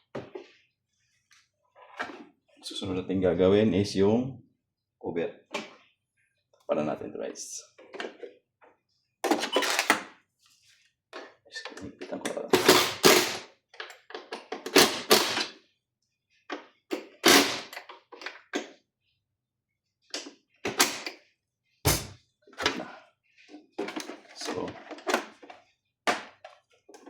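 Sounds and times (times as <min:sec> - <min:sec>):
knocks clicks and scrapes of handling: 0:07.8 - 0:08.4, 0:11.1 - 0:15.6, 0:21.9 - 0:27.0.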